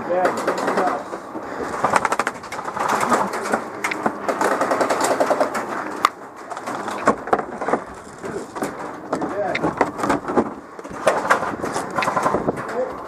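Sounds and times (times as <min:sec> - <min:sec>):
airsoft gun firing in bursts: 0:04.1 - 0:05.6.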